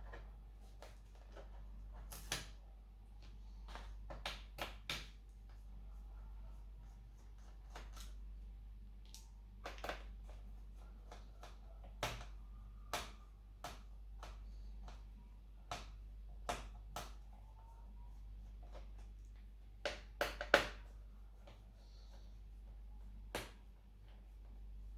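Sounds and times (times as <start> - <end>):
low steady hum: 0.0 - 24.9
small tools clicking and tapping: 9.0 - 10.4.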